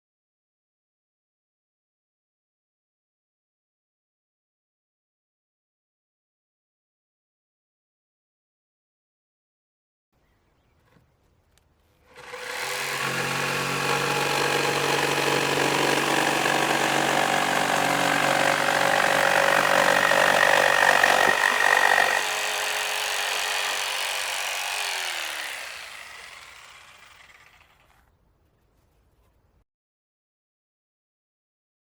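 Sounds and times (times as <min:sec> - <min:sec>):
electric jigsaw running: 0:12.1 - 0:28.0.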